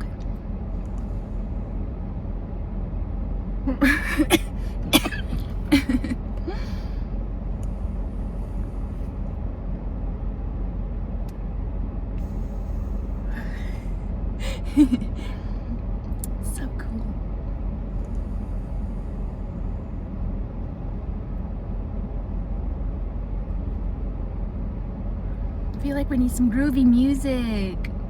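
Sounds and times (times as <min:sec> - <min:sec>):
low hum inside car: 0:00.0 - 0:28.0
person coughing: 0:03.8 - 0:06.7.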